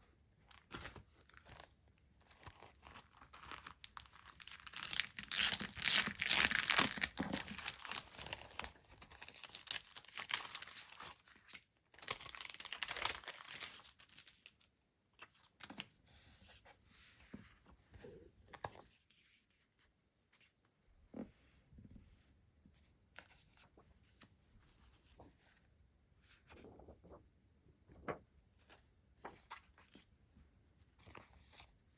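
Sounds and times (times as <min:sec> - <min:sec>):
plastic packaging crinkling and tearing: 0:02.6 - 0:14.6.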